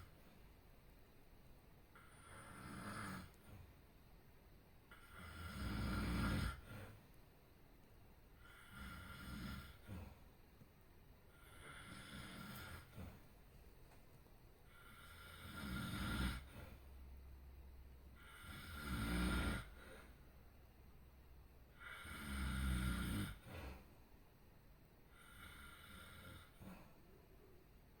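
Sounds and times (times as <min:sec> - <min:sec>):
person snoring: 0:02.0 - 0:03.4, 0:04.9 - 0:07.0, 0:08.4 - 0:10.1, 0:11.3 - 0:13.1, 0:14.7 - 0:16.7, 0:18.2 - 0:20.1, 0:21.8 - 0:23.7, 0:25.1 - 0:26.7.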